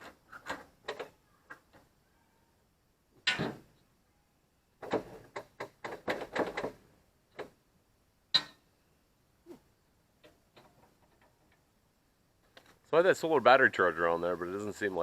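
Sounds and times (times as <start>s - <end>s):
clattering knocks rattle: 4.8s - 6.8s.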